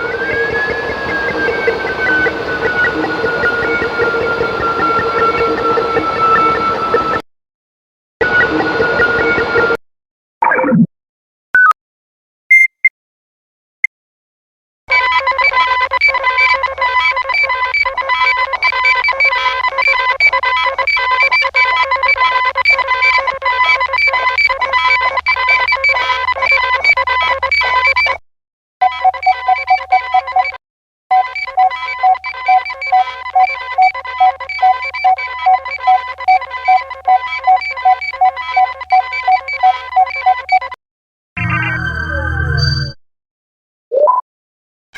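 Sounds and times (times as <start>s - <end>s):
electronic beeping and trilling tones: 41.4s - 43.0s.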